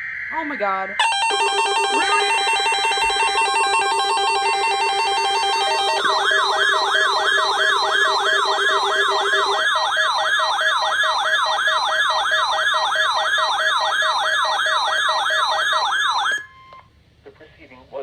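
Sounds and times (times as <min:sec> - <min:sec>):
steady beeps: 0:00.0 - 0:09.9
warbling alarm siren: 0:00.0 - 0:16.8.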